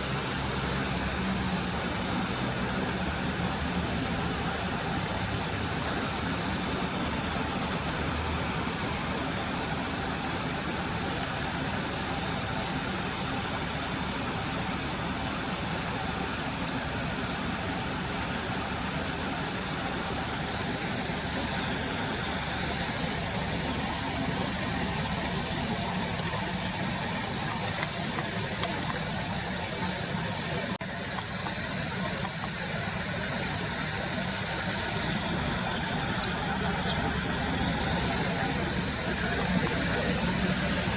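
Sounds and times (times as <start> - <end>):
car engine idling: 0.0 - 40.9
high-pitched drone: 20.0 - 40.9.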